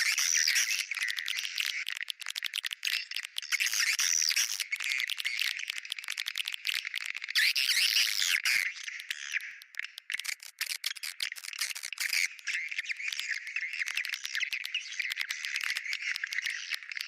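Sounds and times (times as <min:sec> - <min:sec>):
rapid dry clicks: 0:00.0 - 0:12.9, 0:13.8 - 0:17.0.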